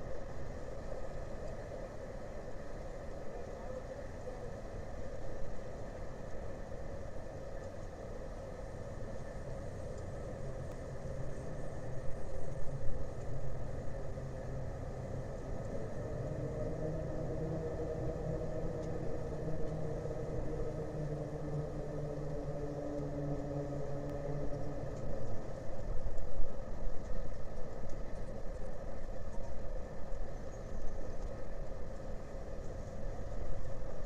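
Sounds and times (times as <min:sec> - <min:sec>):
droning hum: 0:00.0 - 0:34.0
low engine rumble: 0:08.6 - 0:34.0.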